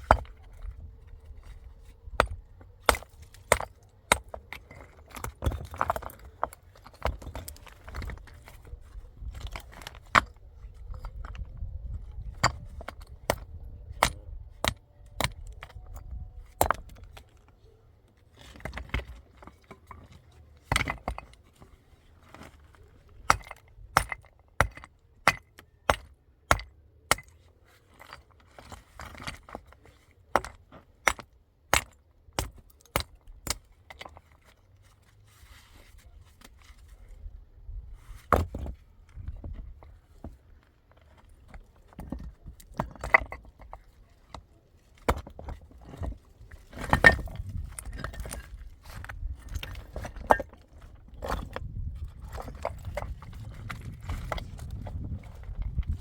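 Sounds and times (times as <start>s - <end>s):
hard objects knocking and clinking: 41.3s - 56.0s.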